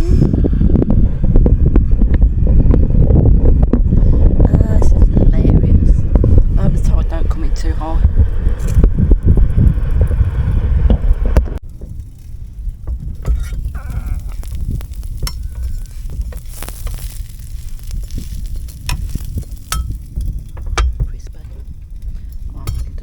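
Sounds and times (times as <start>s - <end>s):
wind buffeting microphone: 0.0s - 23.0s
food sizzling in a pan: 13.3s - 20.2s.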